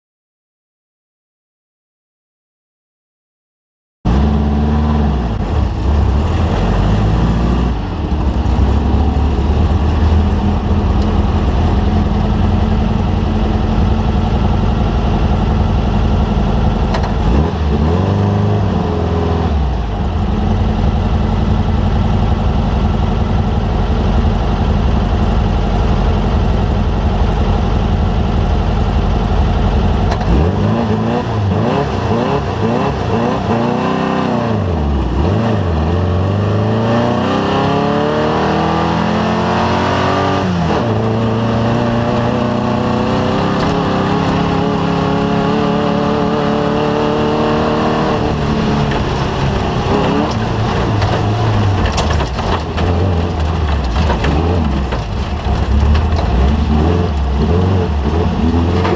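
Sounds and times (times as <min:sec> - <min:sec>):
race vehicle engine revving hard: 0:04.1 - 0:14.6, 0:16.5 - 0:19.7, 0:30.1 - 0:58.9.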